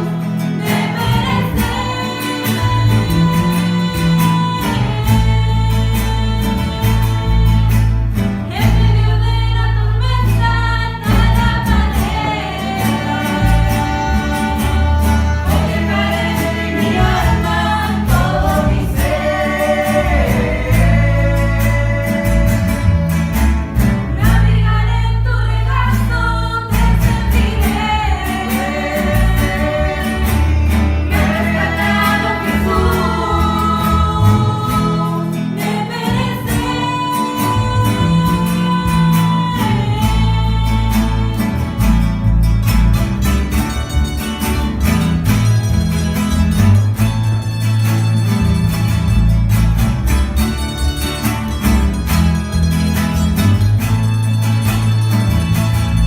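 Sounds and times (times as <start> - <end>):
choir backing vocals: 0.0 - 7.3, 8.5 - 41.8
bass guitar: 0.0 - 56.0
guitar: 0.0 - 56.0
person singing worship song: 10.9 - 23.2, 24.2 - 41.7.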